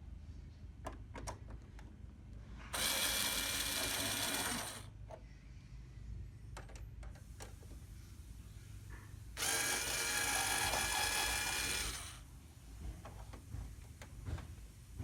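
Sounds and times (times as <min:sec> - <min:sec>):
small clicks and knocks: 0:00.8 - 0:01.9, 0:06.5 - 0:07.6
cordless screwdriver running: 0:02.8 - 0:04.9, 0:09.4 - 0:12.2.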